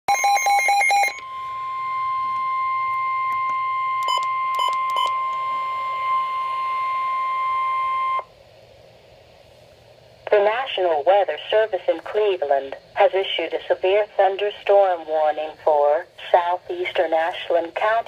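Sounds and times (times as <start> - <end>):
steady warning alarm tone: 0.1 - 8.3
short beeps: 4.0 - 8.2.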